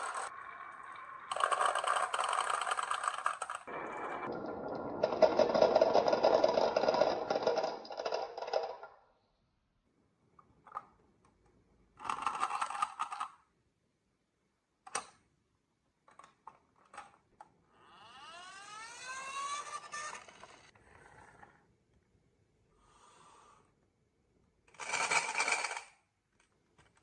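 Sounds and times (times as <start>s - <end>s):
marbles rolling along a track: 0.0s - 0.4s, 1.3s - 9.0s, 17.9s - 21.6s, 24.7s - 26.0s.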